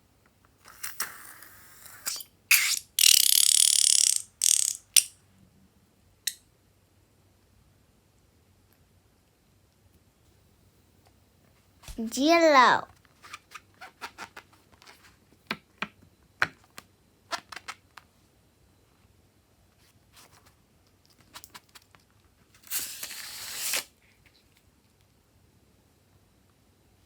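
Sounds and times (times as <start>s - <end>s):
small sharp clicks and snips: 2.0s - 5.1s.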